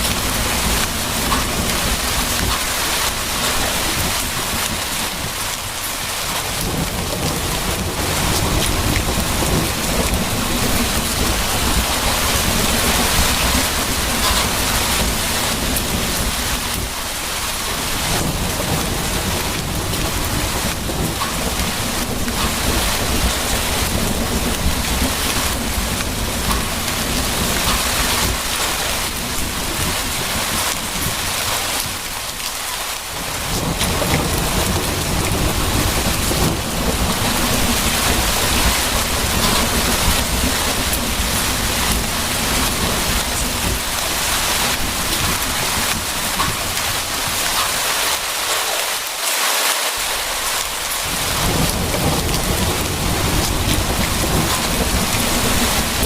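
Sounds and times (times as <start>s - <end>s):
low rolling thunder: 0.0s - 32.5s, 33.1s - 47.8s, 50.0s - 56.0s
steady rain falling: 0.0s - 56.0s.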